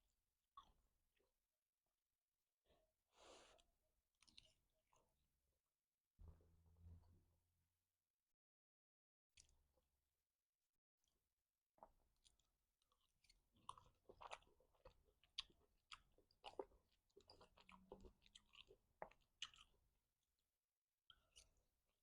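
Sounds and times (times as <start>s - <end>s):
close-up chewing of food: 11.8s - 20.1s, 21.1s - 21.8s.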